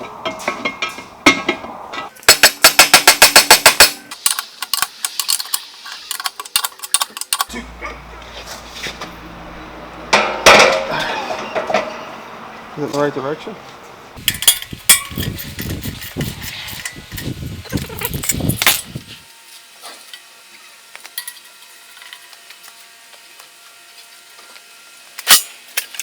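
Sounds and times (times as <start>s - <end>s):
metal tools clinking and knocking: 0.3s - 7.6s, 14.2s - 19.0s.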